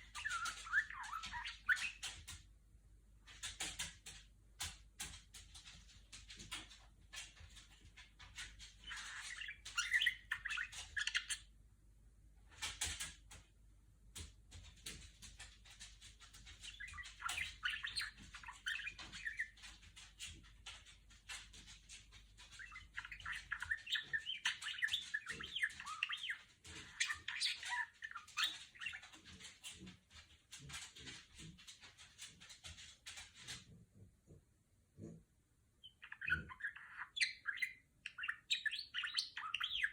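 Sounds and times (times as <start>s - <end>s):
budgerigar chirping and warbling: 0.0s - 2.2s, 8.8s - 11.5s, 16.6s - 19.6s, 22.5s - 29.2s, 35.8s - 39.9s.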